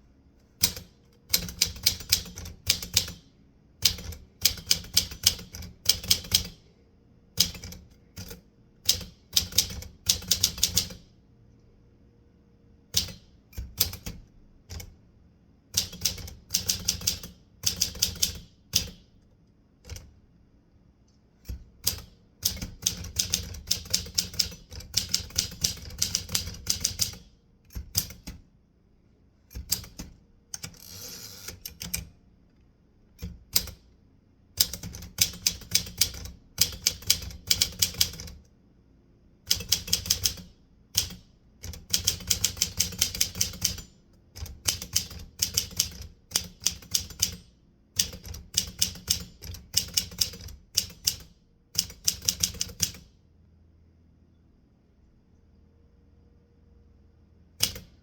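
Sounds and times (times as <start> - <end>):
typewriter typing: 0.6 - 6.6, 7.4 - 11.0, 13.0 - 14.9, 15.8 - 19.0, 21.5 - 28.4, 29.6 - 32.1, 34.6 - 38.4, 39.5 - 53.1, 57.6 - 58.0.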